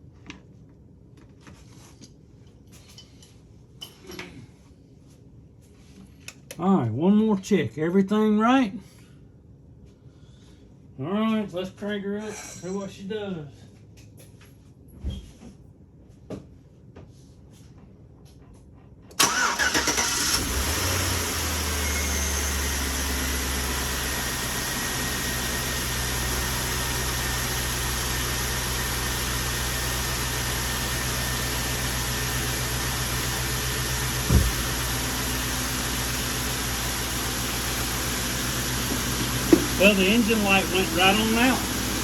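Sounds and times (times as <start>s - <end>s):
engine cranking and idling: 19.1s - 42.0s
short knock: 34.3s - 34.6s.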